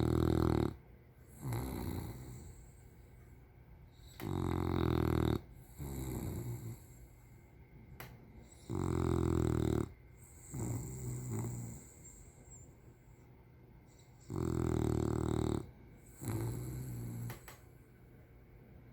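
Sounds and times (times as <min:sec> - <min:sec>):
dog snoring: 0:00.0 - 0:03.1, 0:03.9 - 0:07.2, 0:08.4 - 0:12.7, 0:13.9 - 0:17.6.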